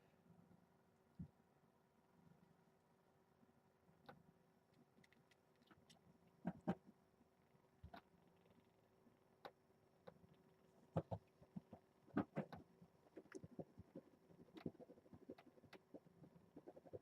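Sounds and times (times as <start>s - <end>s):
kittens tapping and scuffling: 10.8s - 17.0s.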